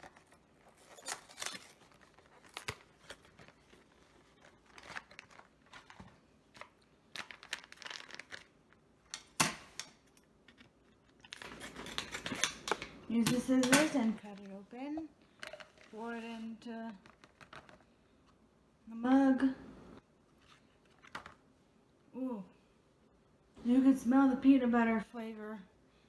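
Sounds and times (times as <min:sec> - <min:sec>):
packaging crinkling and rustling: 0:00.0 - 0:09.2, 0:10.4 - 0:13.0, 0:14.0 - 0:17.9.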